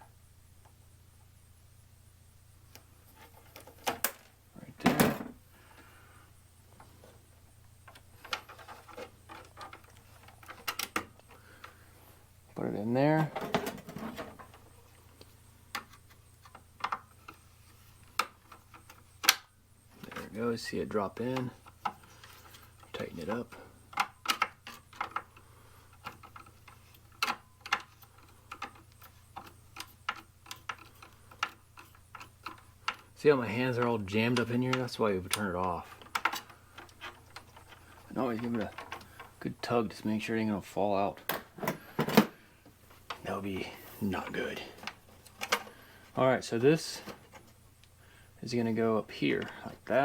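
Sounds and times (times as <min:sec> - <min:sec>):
steady low hum: 0:00.0 - 0:50.0
tools clicking and tapping: 0:26.0 - 0:33.1.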